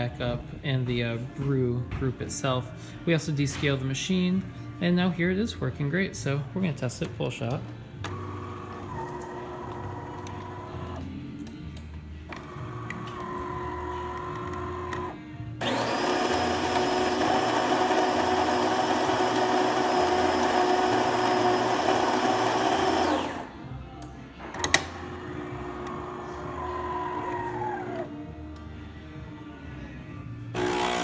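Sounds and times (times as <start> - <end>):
motor humming: 7.8 - 28.7, 30.5 - 31.0
coffee grinder running: 8.1 - 11.1, 12.3 - 23.7, 24.6 - 28.2, 30.6 - 31.0.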